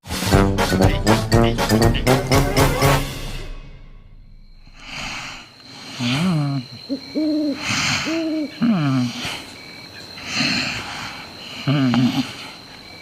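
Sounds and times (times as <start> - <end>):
cartoon snoring: 4.8 - 6.7.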